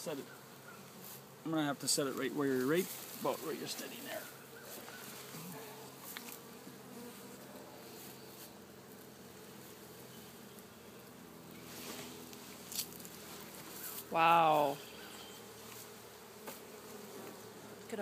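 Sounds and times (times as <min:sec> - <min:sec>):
honeybees buzzing: 0:00.0 - 0:18.0
faint knocks of hive parts: 0:15.0 - 0:17.9.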